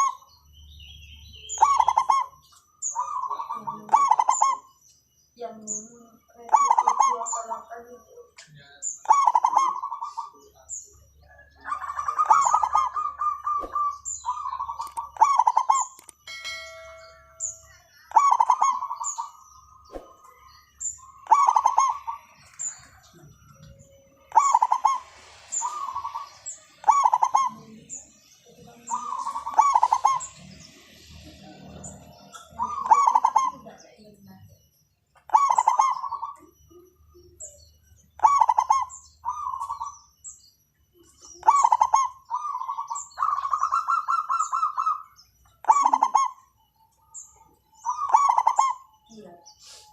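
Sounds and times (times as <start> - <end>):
dove cooing: 1.6 - 4.7, 6.5 - 7.8, 9.0 - 10.4, 11.3 - 16.1, 18.1 - 19.4, 21.2 - 27.9, 28.8 - 33.8, 35.3 - 36.5, 38.2 - 40.0, 41.4 - 46.5, 47.8 - 49.0
thin high chirps: 9.8 - 49.9.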